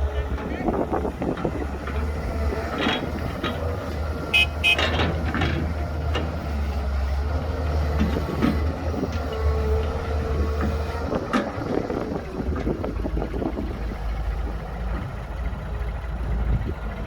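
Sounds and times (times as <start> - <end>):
heavy diesel engine running: 0.0 - 17.0
short high horn toots: 4.3 - 4.9
knocks and clatters: 4.6 - 6.4.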